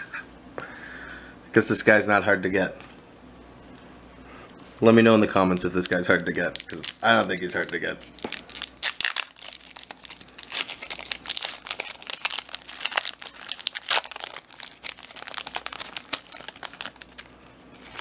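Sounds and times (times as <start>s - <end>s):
foil wrapper tearing and crinkling: 5.0s - 18.0s.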